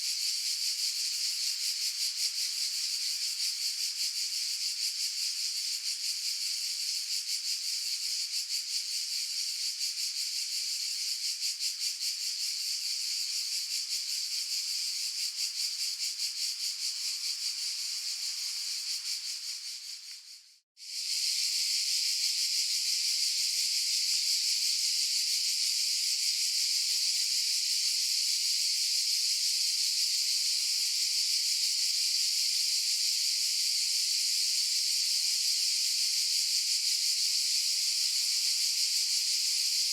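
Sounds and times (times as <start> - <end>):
cicadas buzzing: 12.9 - 39.8.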